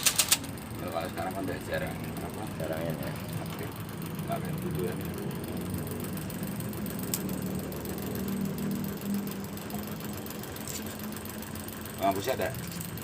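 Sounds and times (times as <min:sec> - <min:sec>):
typewriter sharp click: 0:00.0 - 0:00.5
electric typewriter motor humming: 0:00.0 - 0:13.0.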